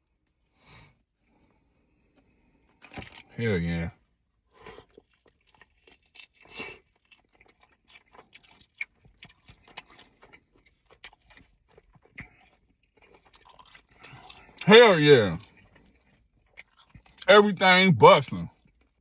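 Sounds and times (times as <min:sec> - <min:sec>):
crunching fried chicken: 0:02.1 - 0:17.3, 0:18.6 - 0:19.0
wet chewing clicks: 0:04.8 - 0:14.6, 0:15.4 - 0:17.3.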